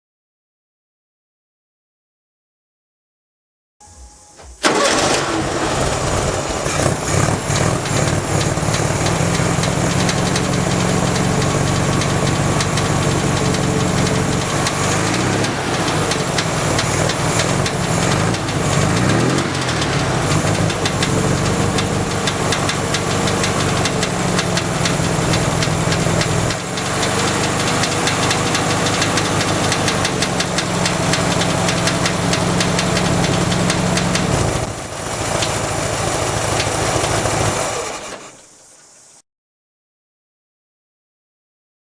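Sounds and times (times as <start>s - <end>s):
car engine running: 4.5s - 37.9s
rapid engine knocking: 6.1s - 38.0s.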